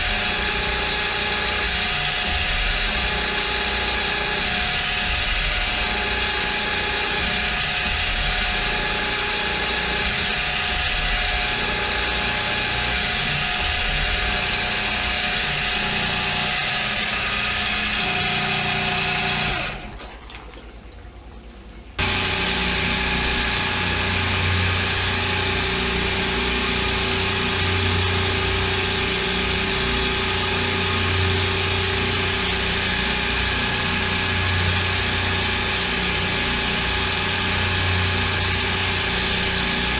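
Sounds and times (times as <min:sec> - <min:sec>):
milling machine whine and hiss: 0:22.0 - 0:39.9.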